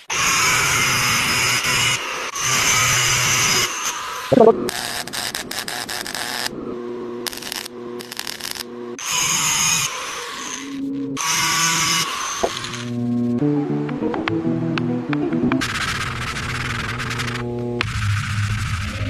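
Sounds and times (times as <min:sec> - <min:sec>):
steady low hum: 0:06.4 - 0:09.0
power tool running in bursts: 0:07.2 - 0:13.0.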